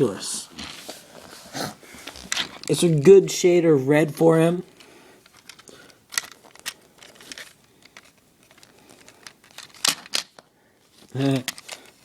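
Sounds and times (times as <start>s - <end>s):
plastic toy rustling: 0.6s - 3.1s, 4.6s - 12.0s.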